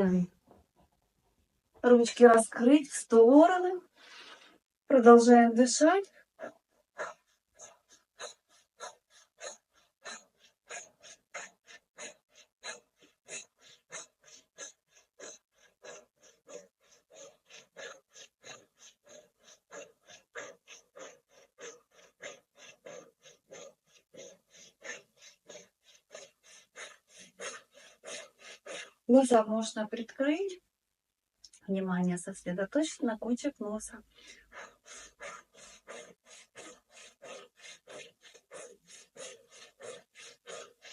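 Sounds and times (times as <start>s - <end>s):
woman breathing rapidly: 3.8s - 4.7s, 6.0s - 29.2s, 34.0s - 40.9s.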